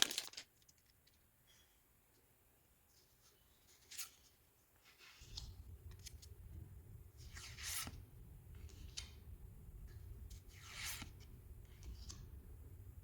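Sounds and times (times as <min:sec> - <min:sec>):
wrapper rustling: 0:00.0 - 0:00.5
trading cards rustling: 0:00.0 - 0:00.9.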